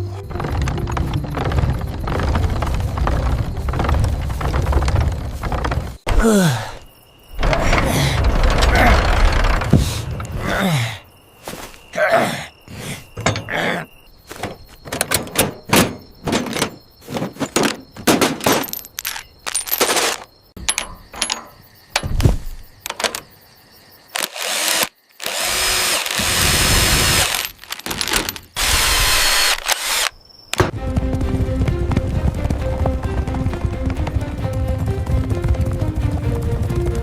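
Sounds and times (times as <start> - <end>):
tool knocks and clunks: 13.2 - 13.5, 14.3 - 19.0, 19.6 - 23.3
power tool running: 24.2 - 27.4, 28.6 - 30.1.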